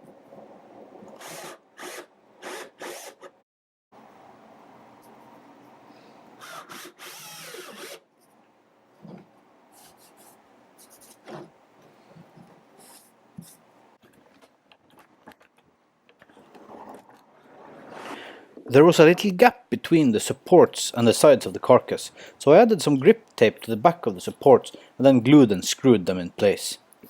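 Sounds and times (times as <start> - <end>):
power drill driving screws into wood: 1.2 - 3.4, 6.4 - 8.0.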